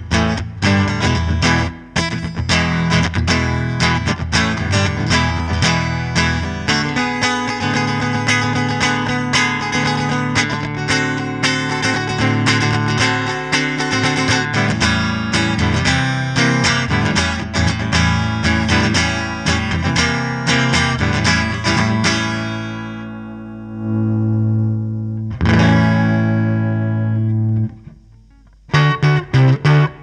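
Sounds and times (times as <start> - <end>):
overdriven electric guitar: 0.0 - 30.0.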